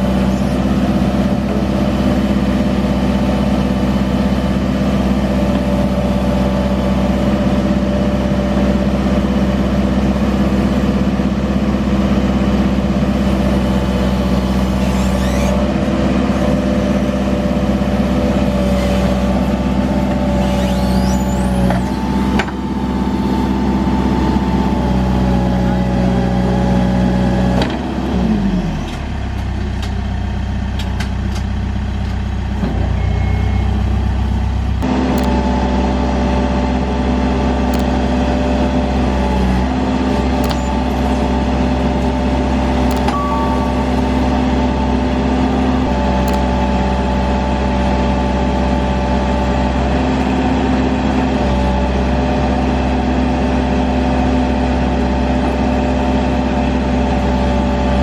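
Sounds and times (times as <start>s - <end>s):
backhoe diesel engine running: 0.0s - 58.0s
high whine: 42.9s - 46.9s.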